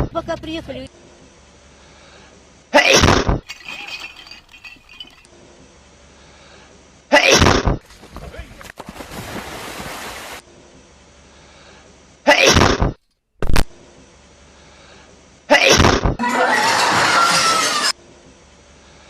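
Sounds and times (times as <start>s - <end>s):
person sneezing loudly: 12.3s - 12.8s.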